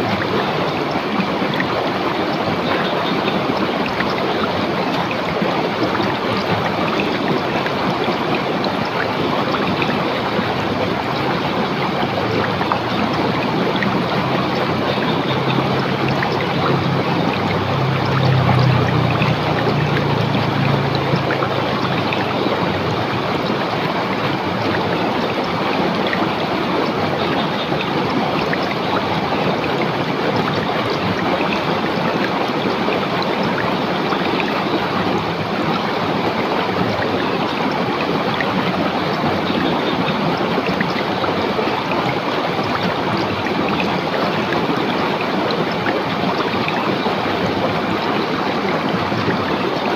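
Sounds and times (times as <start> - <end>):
river water rushing over rocks: 0.0 - 49.9.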